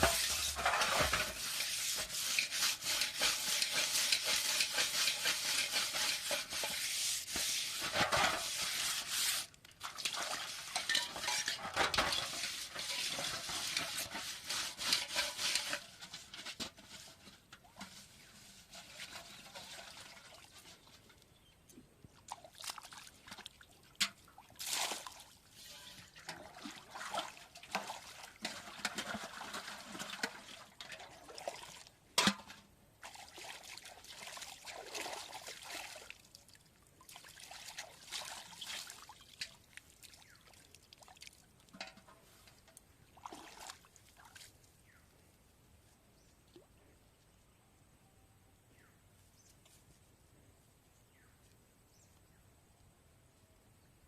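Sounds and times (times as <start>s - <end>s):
water trickling and pouring: 0.0s - 15.9s.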